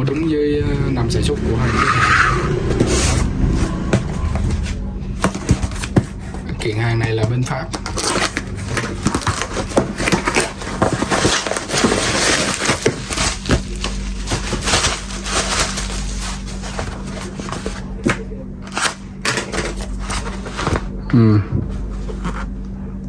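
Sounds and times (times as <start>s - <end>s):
packaging crinkling and rustling: 2.7s - 20.9s.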